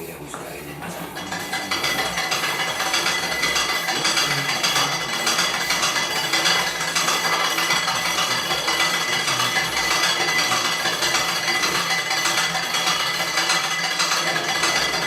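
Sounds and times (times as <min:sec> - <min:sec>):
appliance metallic rattling: 0:00.0 - 0:15.0.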